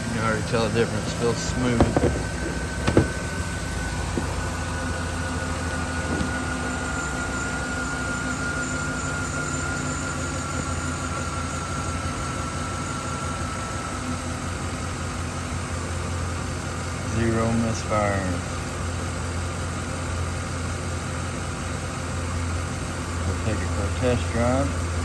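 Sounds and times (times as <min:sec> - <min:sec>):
car engine idling: 0:00.0 - 0:25.0
short knock: 0:01.8 - 0:04.5, 0:06.0 - 0:06.5.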